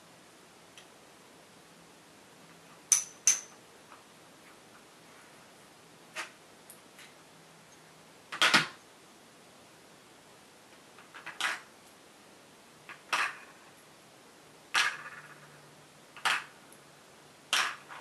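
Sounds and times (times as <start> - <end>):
metallic clicks and knocks: 2.9 - 3.6.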